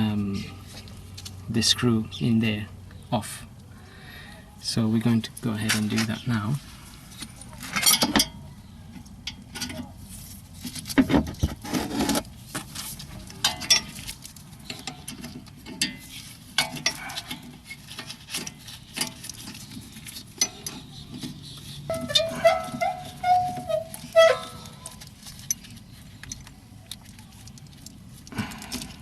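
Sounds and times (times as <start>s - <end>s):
allen key clinking and scraping: 7.2s - 8.4s, 13.0s - 27.8s
metal clatter: 10.6s - 26.5s.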